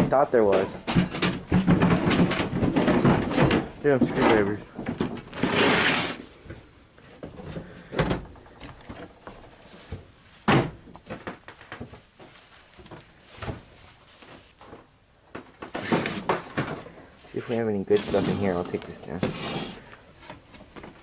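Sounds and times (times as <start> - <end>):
objects knocking and clunking: 0.0 - 5.7, 6.4 - 17.3.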